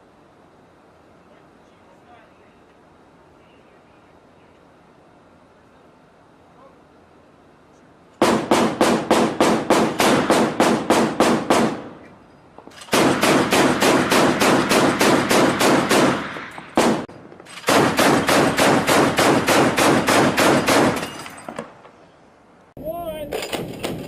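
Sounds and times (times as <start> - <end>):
automatic gunfire bursts: 8.2 - 12.0, 12.8 - 21.2
single gunshot: 12.9 - 21.1.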